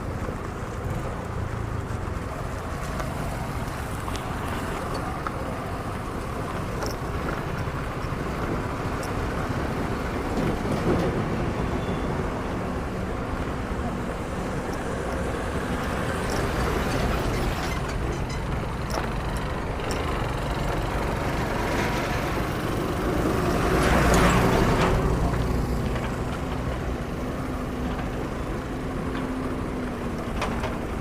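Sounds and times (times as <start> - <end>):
road traffic rumble: 0.0 - 31.0.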